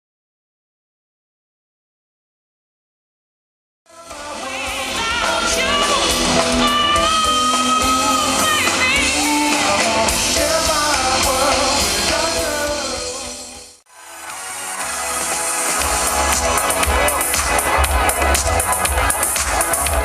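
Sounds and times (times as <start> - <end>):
person singing long notes: 3.9 - 13.5
steady beat: 4.8 - 20.0.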